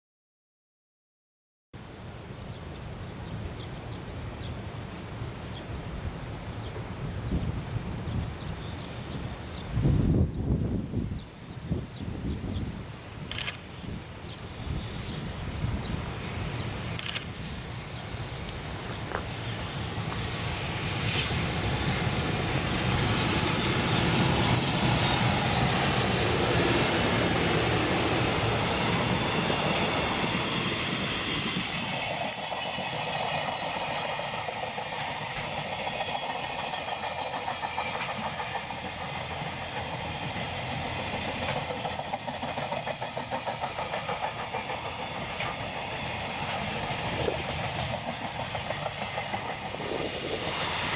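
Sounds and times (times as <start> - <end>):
freight train passing: 1.8 - 50.9
wagons clickety-clack: 34.5 - 45.9, 46.5 - 50.1.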